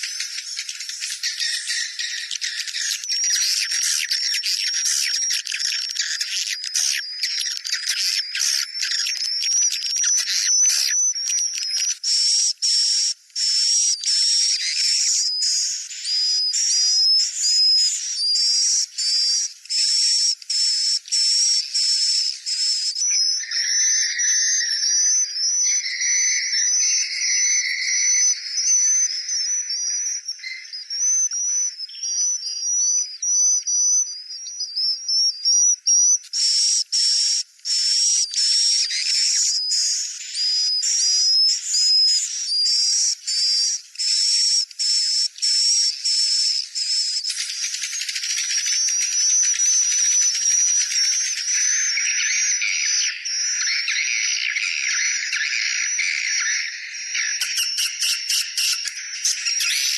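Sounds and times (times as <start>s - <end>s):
lower warbling bird call: 57.2s - 59.9s.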